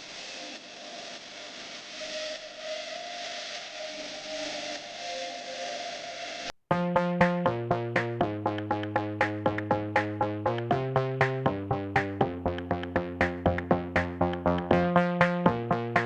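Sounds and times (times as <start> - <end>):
electronic synthesizer music: 6.7 - 16.0.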